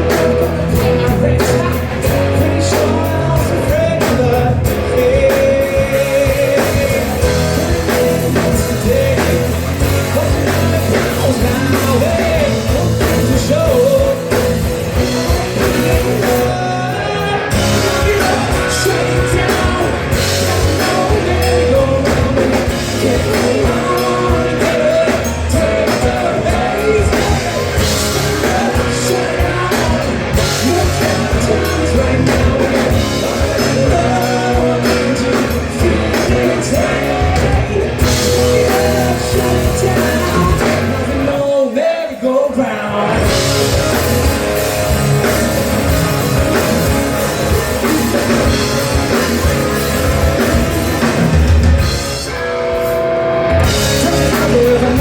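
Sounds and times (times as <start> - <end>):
live rock band with singer: 0.0 - 55.0.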